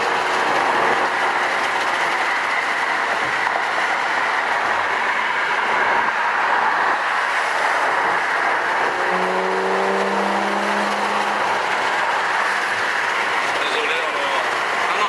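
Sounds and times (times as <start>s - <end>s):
car engine hum: 0.0s - 15.0s
road and tyre noise: 0.0s - 15.0s.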